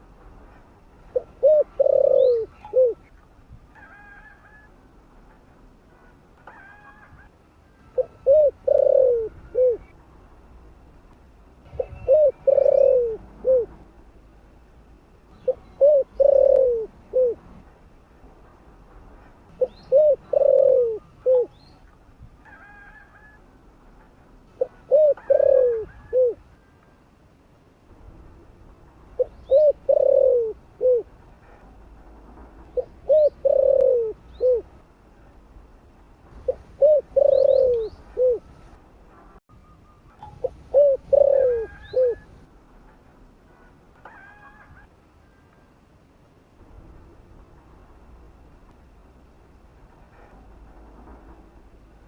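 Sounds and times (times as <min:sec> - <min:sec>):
dove cooing: 0:01.1 - 0:03.1, 0:07.9 - 0:09.9, 0:11.8 - 0:13.8, 0:15.4 - 0:17.5, 0:19.6 - 0:21.6, 0:24.6 - 0:26.4, 0:29.2 - 0:31.1, 0:32.7 - 0:34.7, 0:36.4 - 0:38.5, 0:40.2 - 0:42.4.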